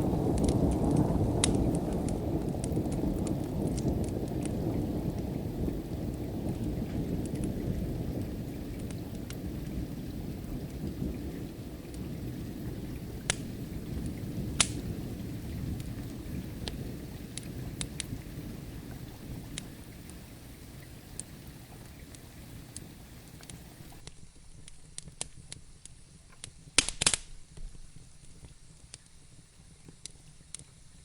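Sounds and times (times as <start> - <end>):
distant thunder rumble: 0.0 - 24.0
steady rain: 0.0 - 24.1
wood fire crackling and popping: 0.0 - 29.2.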